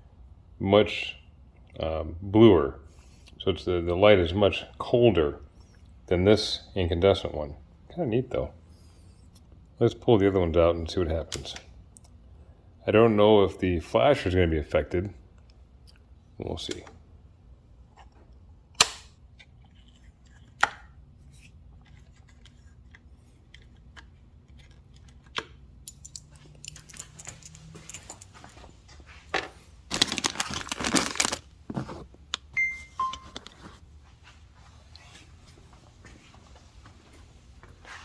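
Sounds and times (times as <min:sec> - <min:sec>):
rustling and scraping: 0:26.3 - 0:32.4, 0:33.2 - 0:38.0
short electronic beeps: 0:32.6 - 0:33.4.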